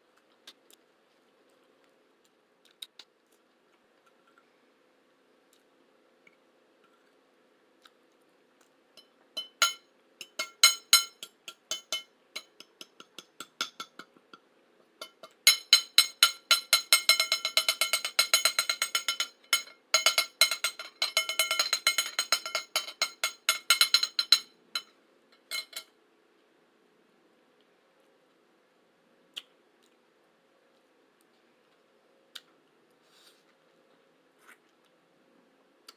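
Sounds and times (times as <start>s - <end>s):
metal utensil clinking on dish: 9.0s - 14.1s, 15.0s - 25.9s.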